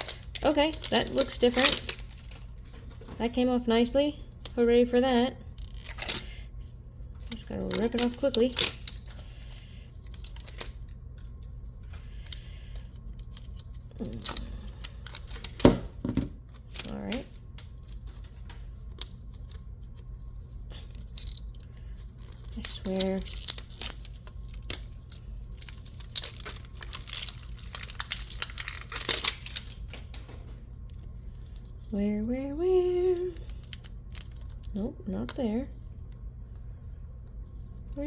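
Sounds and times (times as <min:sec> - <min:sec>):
plastic packaging clicks and rustles: 0:00.0 - 0:03.5, 0:07.0 - 0:19.7, 0:20.8 - 0:31.1, 0:33.1 - 0:34.8
wrapper crinkling and tearing: 0:00.0 - 0:03.6, 0:04.3 - 0:20.0, 0:20.7 - 0:30.7, 0:33.0 - 0:34.8.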